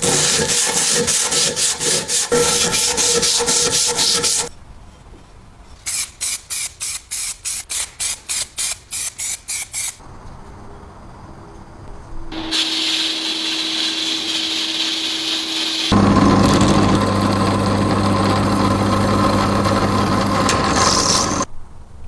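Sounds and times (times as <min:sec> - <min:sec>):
abrasive rubbing strokes: 0:00.0 - 0:04.5.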